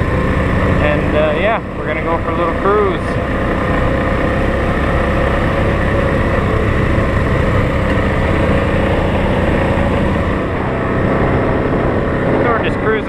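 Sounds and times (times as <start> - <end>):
atv engine running: 0.0 - 13.0
wind noise: 6.4 - 13.0.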